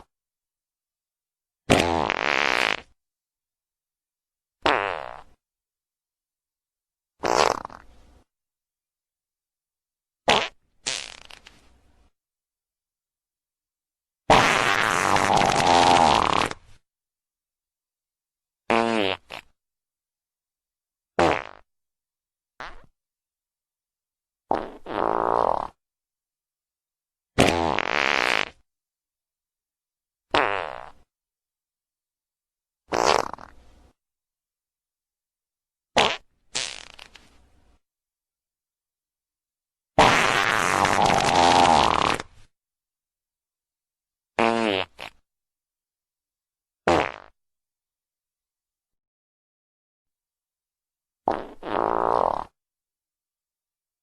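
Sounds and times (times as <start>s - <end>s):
fart sound effects: 1.7s - 3.0s, 4.6s - 5.4s, 7.2s - 7.9s, 10.3s - 11.6s, 14.3s - 16.8s, 18.7s - 19.5s, 21.2s - 21.7s, 22.6s - 22.9s, 24.5s - 25.8s, 27.4s - 28.6s, 30.3s - 31.1s, 32.9s - 33.6s, 36.0s - 37.3s, 40.0s - 42.5s, 44.4s - 45.2s, 46.9s - 47.4s, 51.3s - 52.6s.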